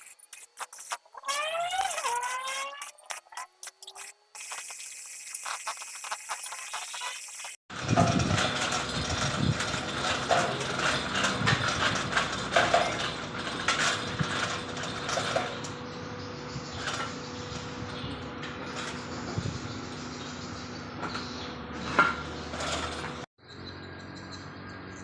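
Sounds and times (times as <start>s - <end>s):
metal clanks and knocks: 7.7s - 15.9s, 21.0s - 23.3s
steady machine hum: 7.7s - 23.3s.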